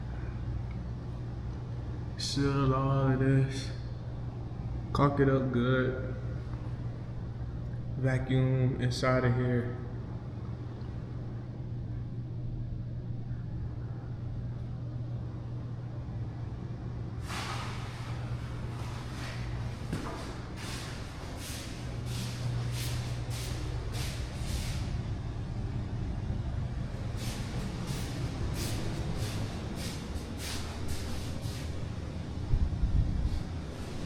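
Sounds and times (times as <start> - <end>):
machine humming: 0.0 - 34.0
short hissing bursts: 17.2 - 19.5, 20.6 - 25.0, 27.1 - 31.9.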